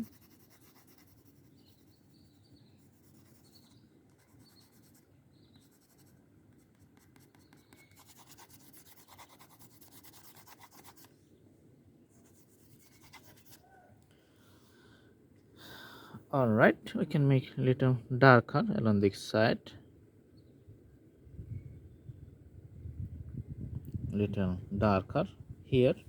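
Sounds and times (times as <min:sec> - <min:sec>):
colouring on paper by hand: 0:00.0 - 0:11.1, 0:12.2 - 0:13.6.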